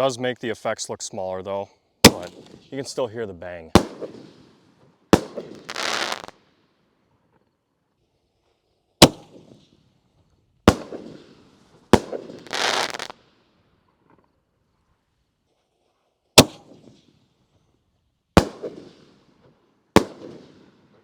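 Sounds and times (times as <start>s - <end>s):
firework booms: 2.0s - 2.7s, 3.7s - 6.4s, 10.7s - 13.2s, 18.4s - 19.1s, 20.0s - 21.0s
firework hissing rush: 5.4s - 6.3s, 12.0s - 13.1s.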